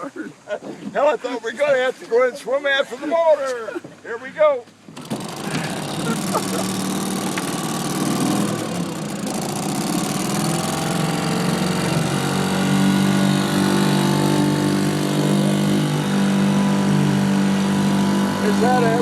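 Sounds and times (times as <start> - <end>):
two-stroke outboard motor running: 4.9 - 19.0.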